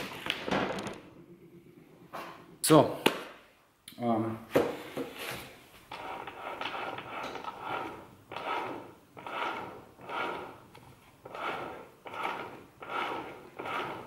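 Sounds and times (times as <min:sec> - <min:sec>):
gearbox grinding whirr: 0:11.3 - 0:14.0.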